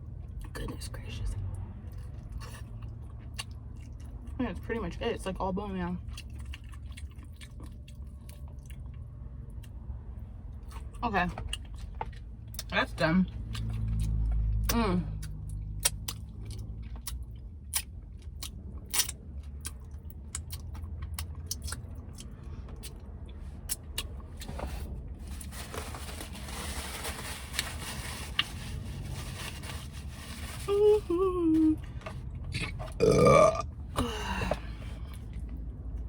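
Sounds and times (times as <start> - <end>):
soft rustle: 24.4 - 31.2
woman burping: 33.0 - 34.6.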